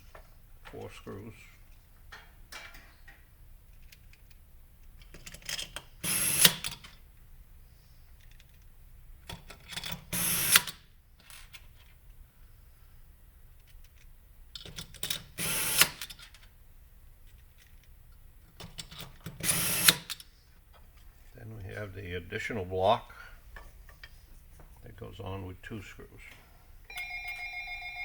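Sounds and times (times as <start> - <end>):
power screwdriver driving screws: 6.0 - 6.7, 10.2 - 10.8, 15.4 - 16.1, 19.4 - 20.2.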